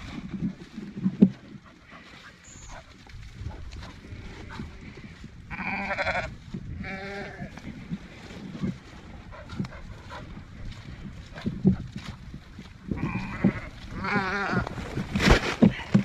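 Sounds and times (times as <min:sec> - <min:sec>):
farm animal bleating: 0:05.5 - 0:07.7, 0:12.9 - 0:14.6.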